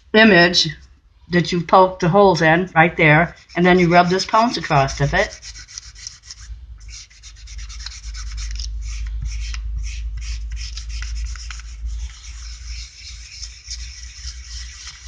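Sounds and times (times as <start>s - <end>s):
low rumble: 0.0s - 15.0s
pounce pad rubbing on paper: 3.1s - 15.0s.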